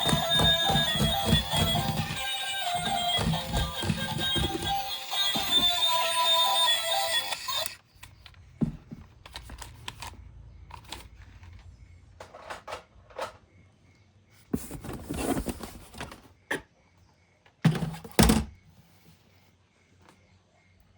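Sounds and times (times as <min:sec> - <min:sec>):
packaging rustle: 0:00.0 - 0:06.6
toys and packaging clicking: 0:00.0 - 0:13.4.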